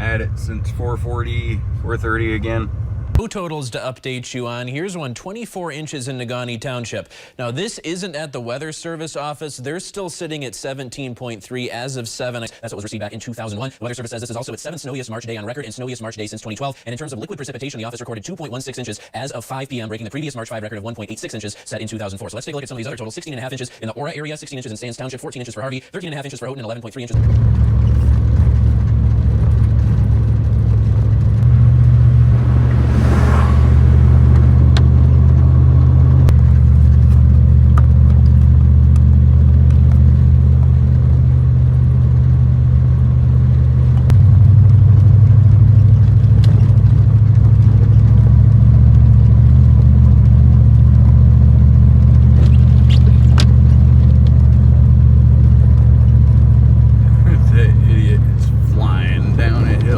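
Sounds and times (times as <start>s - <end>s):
pickup truck engine drone: 0.0s - 3.2s, 27.2s - 59.9s.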